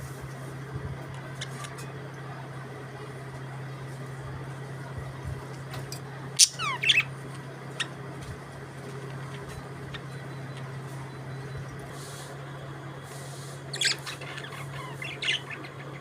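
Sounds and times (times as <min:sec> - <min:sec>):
steady low hum: 0:00.0 - 0:16.0
budgerigar squawking and chirping: 0:06.4 - 0:07.1, 0:13.7 - 0:16.0.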